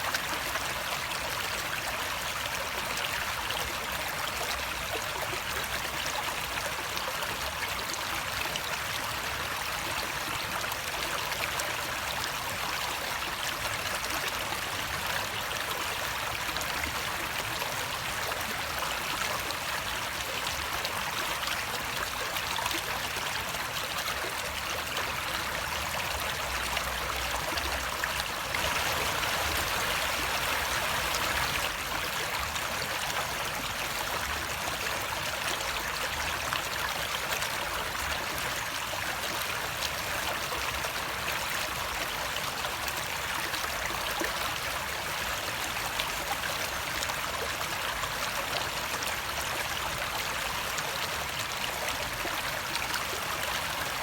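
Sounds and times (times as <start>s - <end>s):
stream water rushing: 11.6s - 54.0s.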